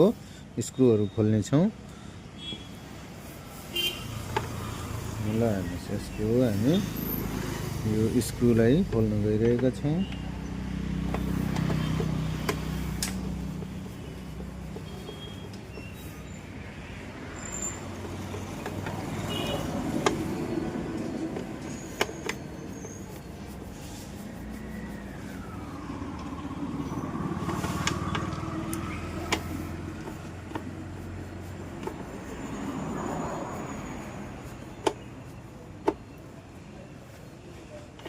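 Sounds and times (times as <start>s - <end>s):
sharp clicks and knocks: 8.8s - 10.2s, 11.0s - 16.0s, 17.8s - 22.6s, 27.4s - 30.8s, 34.8s - 35.1s.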